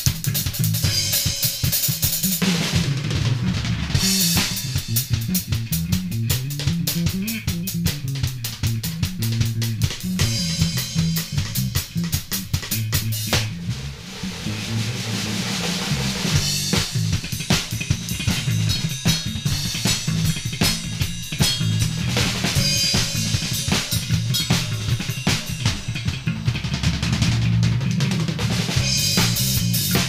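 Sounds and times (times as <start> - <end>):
cymbals: 0.0 - 5.6, 10.2 - 26.3
bass guitar line: 0.0 - 30.0
drum kit playing: 0.0 - 30.0.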